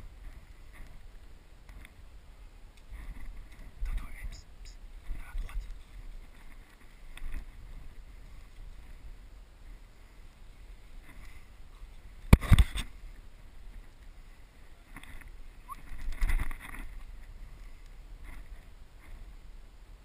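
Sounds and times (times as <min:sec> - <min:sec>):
wind rumble: 0:00.0 - 0:20.0
rustling clatter: 0:14.8 - 0:19.4.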